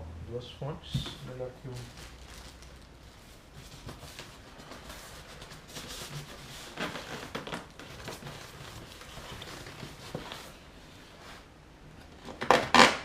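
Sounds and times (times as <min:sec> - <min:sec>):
packaging rustling: 0:01.0 - 0:10.6.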